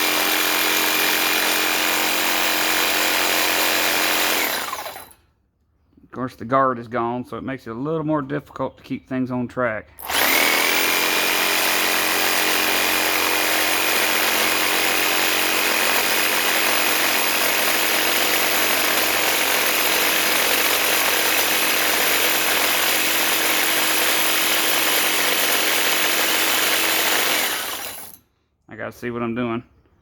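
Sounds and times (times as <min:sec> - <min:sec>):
reciprocating saw cutting steel: 0:00.0 - 0:05.2, 0:10.0 - 0:28.2.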